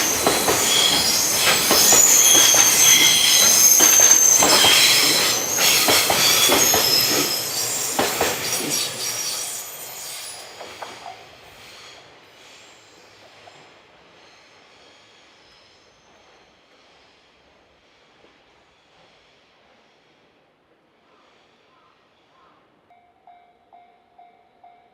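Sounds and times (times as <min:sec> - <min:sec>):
wheels clattering over rail joints: 0:00.0 - 0:09.0
train wheels squealing on rails: 0:00.0 - 0:22.6.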